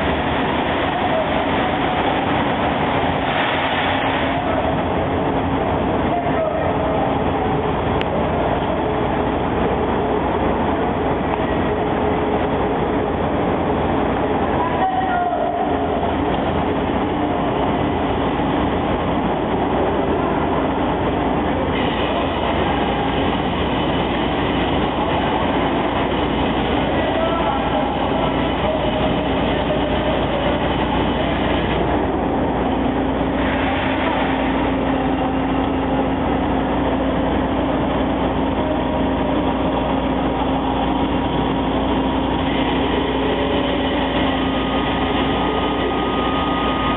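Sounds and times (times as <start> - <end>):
drilling machine mechanical din: 15.9 - 46.9.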